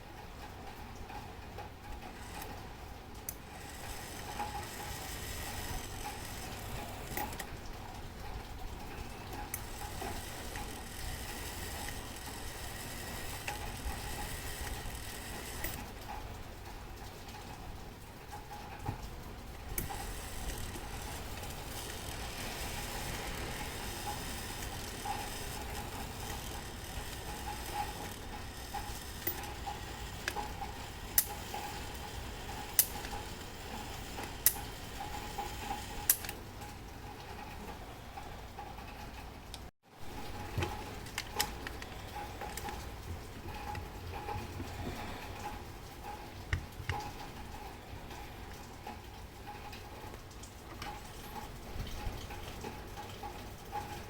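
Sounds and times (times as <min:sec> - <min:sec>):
clock mechanism clicking: 0:00.0 - 0:37.6, 0:39.5 - 0:44.6
low background noise: 0:00.0 - 0:54.0.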